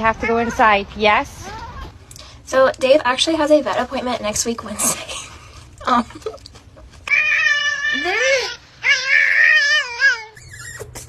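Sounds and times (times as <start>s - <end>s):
cat yowling: 0.0s - 0.8s, 1.4s - 2.0s, 7.1s - 11.0s.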